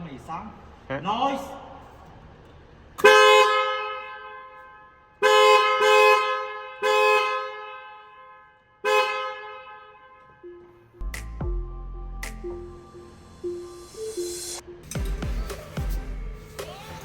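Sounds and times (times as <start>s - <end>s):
two-tone car horn honks: 3.0s - 11.0s.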